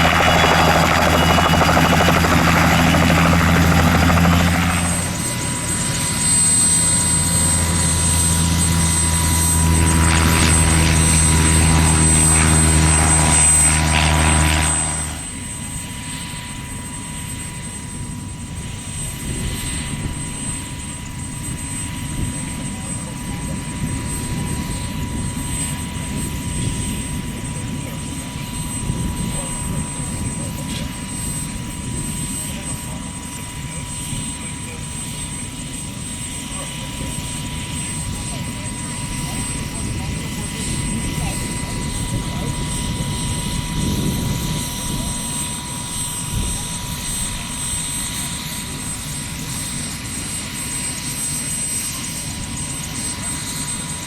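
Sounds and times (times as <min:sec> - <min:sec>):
light aircraft drone: 0:00.0 - 0:54.0.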